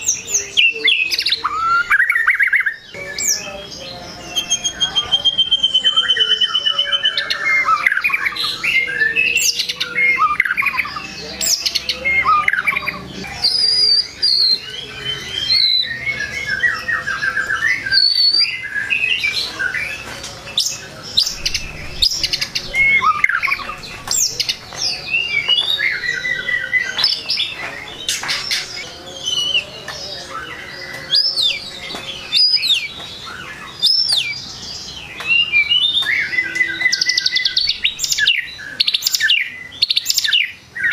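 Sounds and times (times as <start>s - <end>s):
songbird singing varied whistles: 4.3s - 29.7s, 35.2s - 40.9s.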